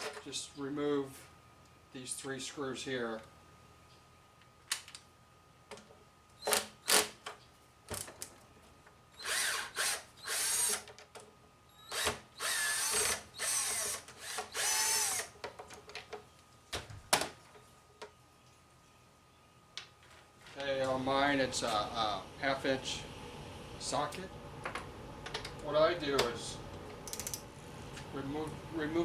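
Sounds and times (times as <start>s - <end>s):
power drill motor whine: 9.2s - 10.9s, 11.8s - 15.3s.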